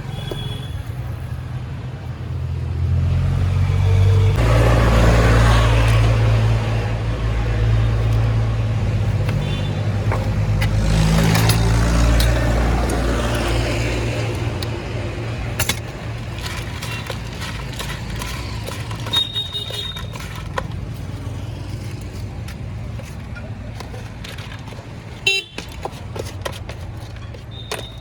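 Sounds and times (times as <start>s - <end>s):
motor vehicle running close by: 2.6s - 22.4s.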